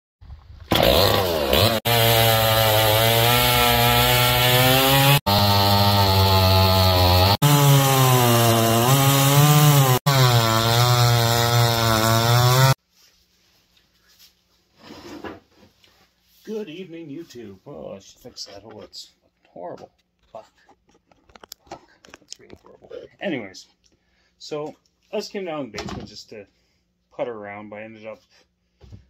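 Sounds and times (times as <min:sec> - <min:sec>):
chainsaw engine at high revs: 0:00.7 - 0:12.8.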